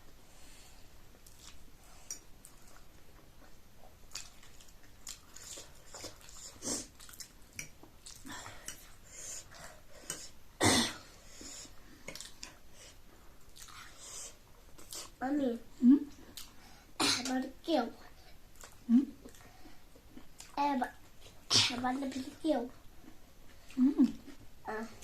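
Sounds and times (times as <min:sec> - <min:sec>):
chewing and slurping noodles: 0:01.2 - 0:10.3.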